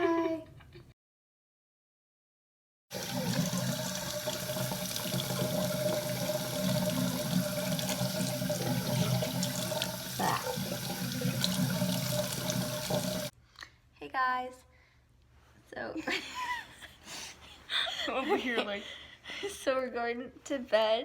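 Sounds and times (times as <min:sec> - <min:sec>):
tap running into sink: 0:03.0 - 0:13.3.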